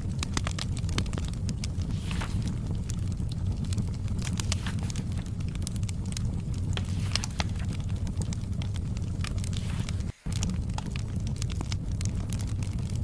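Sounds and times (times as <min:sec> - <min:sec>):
fire pops and snaps: 0:00.0 - 0:13.0
low rumble: 0:00.0 - 0:13.0
wood fire crackling: 0:00.0 - 0:13.0.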